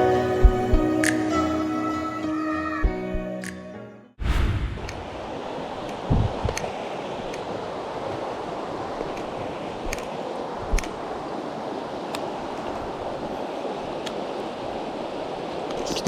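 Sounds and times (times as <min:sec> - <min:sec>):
low thump: 0:04.2 - 0:05.3, 0:06.1 - 0:06.6
stream water rushing: 0:04.6 - 0:16.0.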